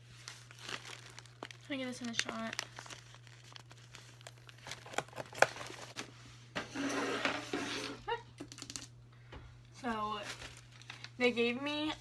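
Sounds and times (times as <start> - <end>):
paper and envelope rustling: 0.0 - 6.2, 9.8 - 11.7
low electrical hum: 0.0 - 12.0.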